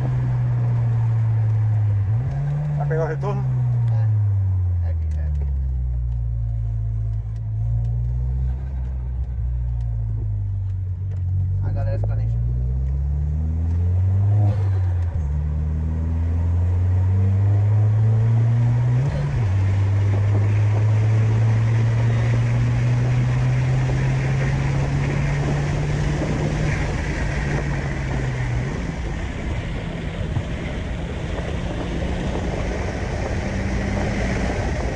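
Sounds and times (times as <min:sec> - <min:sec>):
car engine accelerating: 0:00.0 - 0:34.9
road and wind noise: 0:00.0 - 0:34.9.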